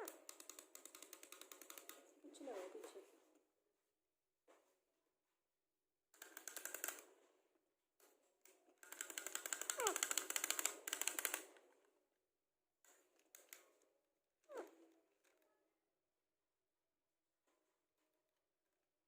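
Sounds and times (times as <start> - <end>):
clicking bird-like chatter: 9.0 - 11.4.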